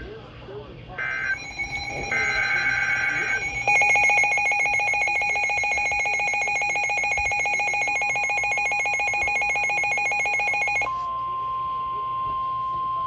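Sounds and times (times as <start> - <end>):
rapidly pulsing electronic alert tone: 1.0 - 10.9.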